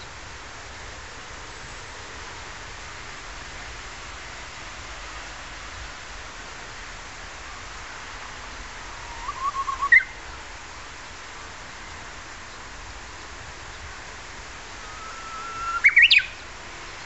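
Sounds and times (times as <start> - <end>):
steady hiss: 0.0 - 17.0
bush warbler singing: 8.5 - 10.4, 12.4 - 17.0.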